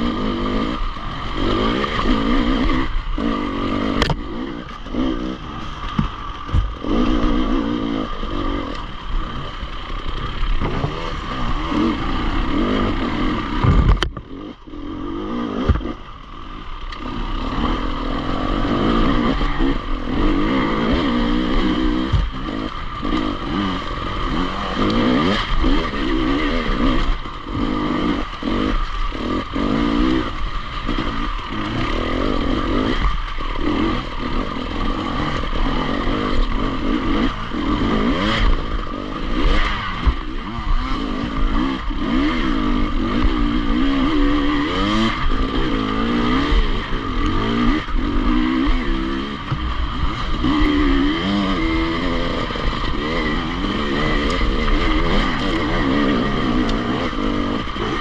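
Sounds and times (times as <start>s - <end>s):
motorcycle engine running: 0.0s - 58.0s.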